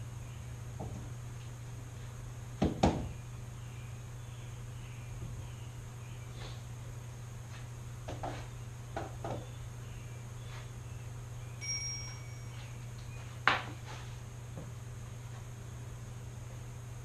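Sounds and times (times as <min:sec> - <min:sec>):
steady low hum: 0:00.0 - 0:17.0
short ringing ping: 0:11.6 - 0:12.6.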